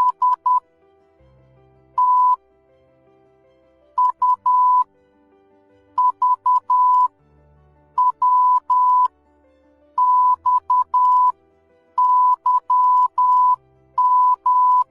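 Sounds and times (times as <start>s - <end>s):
morse code beeps: 0.0s - 0.6s, 2.0s - 2.4s, 4.0s - 4.8s, 6.0s - 7.1s, 8.0s - 9.1s, 10.0s - 11.3s, 12.0s - 14.9s.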